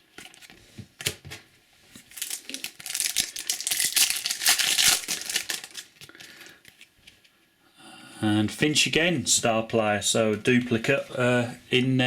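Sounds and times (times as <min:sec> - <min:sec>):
plastic packet tearing and crinkling: 0:02.0 - 0:06.9.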